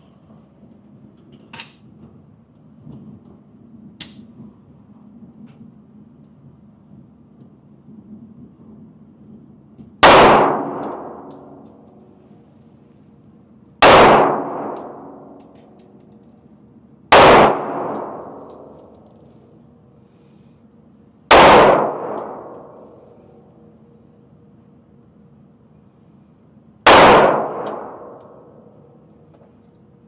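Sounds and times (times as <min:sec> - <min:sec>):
handgun shots with ringing echo: 0:10.0 - 0:11.8, 0:13.8 - 0:15.9, 0:17.1 - 0:19.4, 0:21.3 - 0:22.8, 0:26.9 - 0:28.6.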